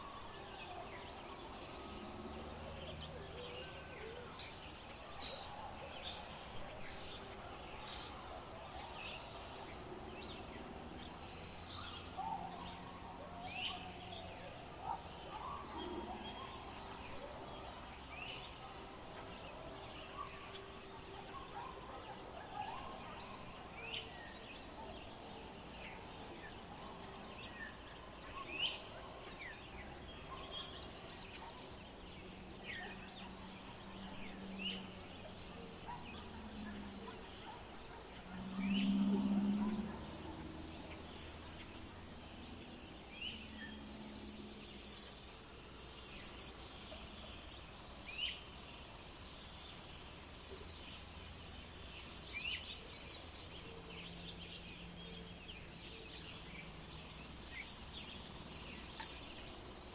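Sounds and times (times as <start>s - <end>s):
outdoor background noise: 0.0s - 59.9s
birds chirping: 27.4s - 59.9s.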